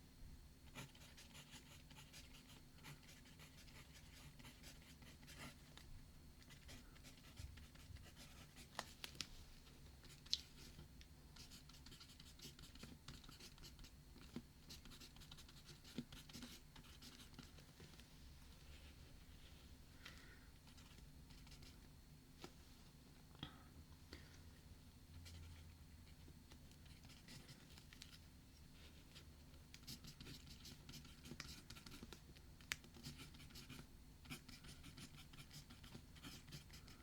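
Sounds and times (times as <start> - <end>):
writing on paper: 29.8 - 32.2, 32.9 - 37.0.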